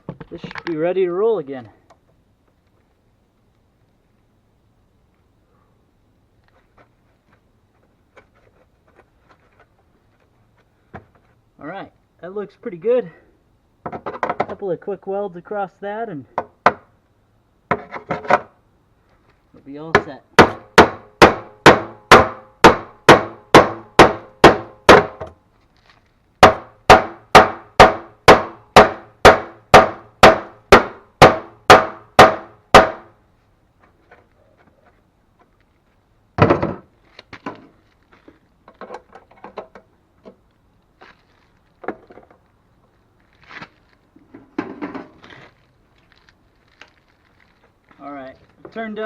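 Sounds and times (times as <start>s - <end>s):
metal knocks and clunks: 13.8s - 14.6s, 36.4s - 37.7s, 44.3s - 45.2s.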